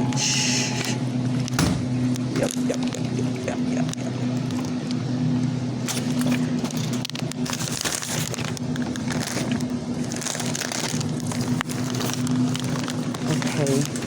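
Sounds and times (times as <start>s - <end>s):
steady low hum: 0.0s - 14.0s
rattling crinkling handling noise: 5.8s - 14.0s.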